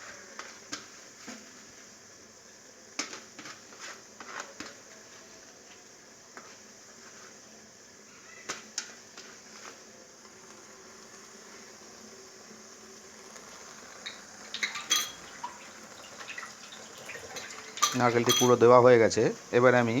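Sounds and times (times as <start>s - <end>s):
faint background hiss: 0.0s - 20.0s
spoon clinking against bowl: 14.0s - 18.6s.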